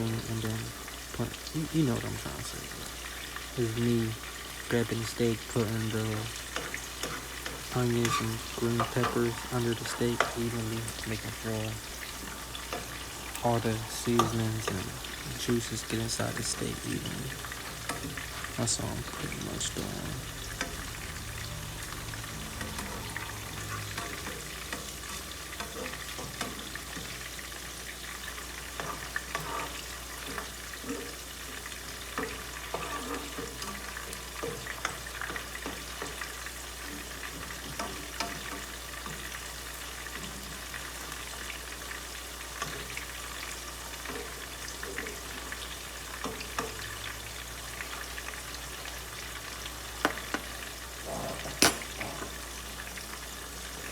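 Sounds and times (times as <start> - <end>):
grease popping and crackling: 0.0 - 53.9
steak sizzling in a pan: 0.0 - 53.9.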